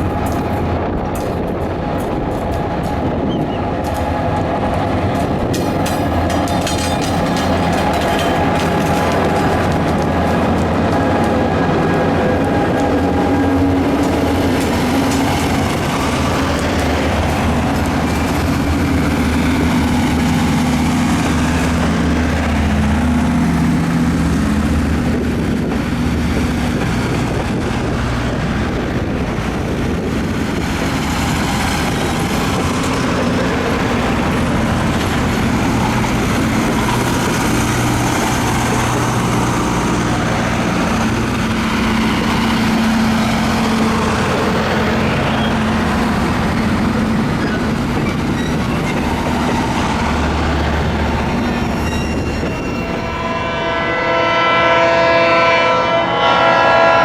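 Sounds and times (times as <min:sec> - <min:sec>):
diesel locomotive engine drone: 0:00.0 - 0:57.0.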